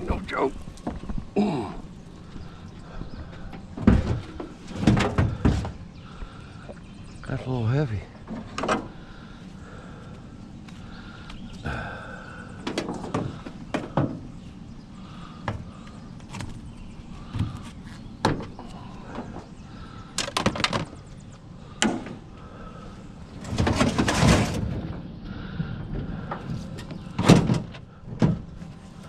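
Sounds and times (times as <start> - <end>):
heavy scrap clunking: 3.3 - 5.8, 23.3 - 28.8.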